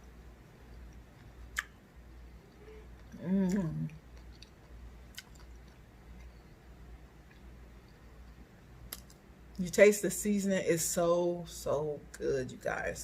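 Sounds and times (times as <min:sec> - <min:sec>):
person chewing: 0:00.1 - 0:01.8, 0:02.5 - 0:09.2
person humming mmm: 0:02.6 - 0:04.0.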